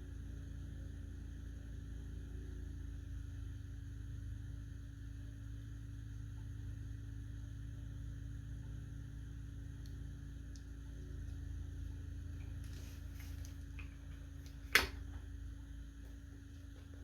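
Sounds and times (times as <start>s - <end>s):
plastic part snapping on: 14.4s - 15.1s.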